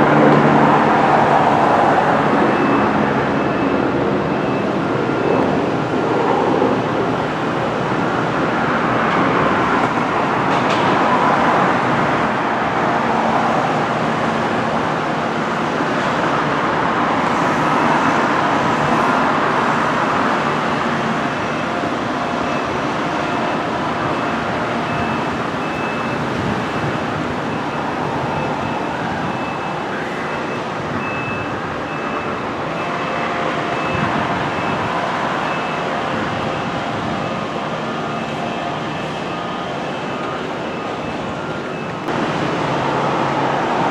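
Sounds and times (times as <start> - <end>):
moving train running noise: 0.0 - 43.9.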